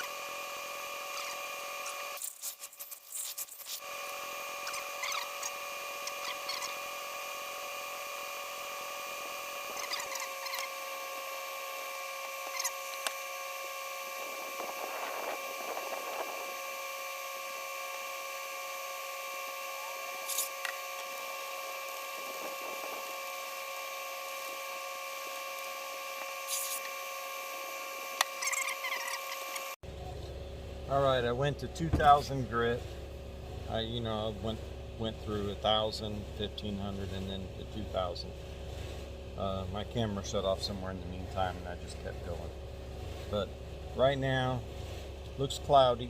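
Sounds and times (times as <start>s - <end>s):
sanding pad scrubbing plastic: 0.0s - 7.1s, 20.0s - 27.0s
power tool whine: 0.0s - 46.0s.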